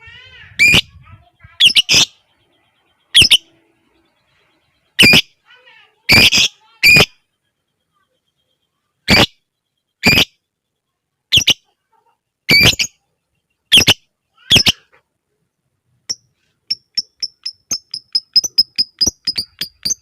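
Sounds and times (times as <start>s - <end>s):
bird screeching calls: 0.0s - 2.2s
high ticking bird chirps: 0.0s - 11.7s, 12.4s - 14.9s, 15.9s - 20.0s.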